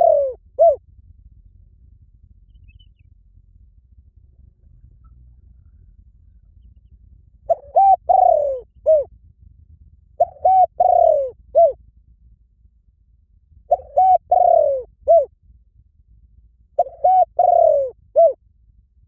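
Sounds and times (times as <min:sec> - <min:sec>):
dove cooing: 0:00.0 - 0:00.8, 0:07.5 - 0:09.1, 0:10.2 - 0:11.8, 0:13.7 - 0:15.3, 0:16.8 - 0:18.4.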